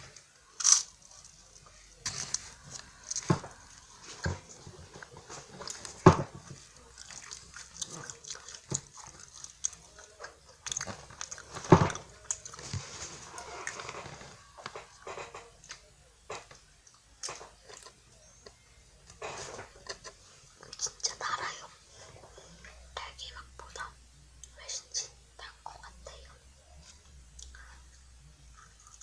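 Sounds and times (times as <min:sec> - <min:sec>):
crisp pastry crunching: 0:00.4 - 0:15.8, 0:28.5 - 0:29.0.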